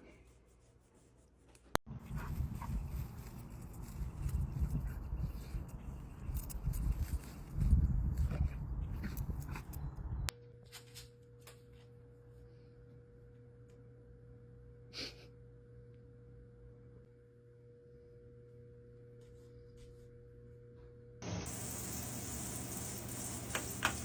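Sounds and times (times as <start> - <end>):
low electrical hum: 2.0 - 24.0
thin steady tone: 21.2 - 24.0.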